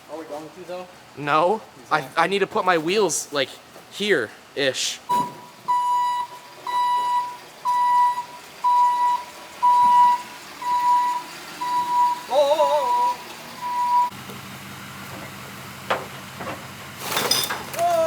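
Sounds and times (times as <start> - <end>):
vehicle back-up alarm beeping: 5.1 - 14.2.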